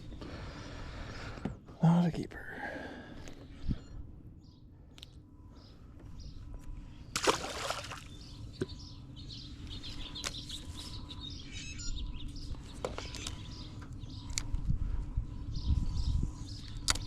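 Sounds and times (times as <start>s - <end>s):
low hum: 0.0s - 17.0s
water splash: 7.2s - 8.1s.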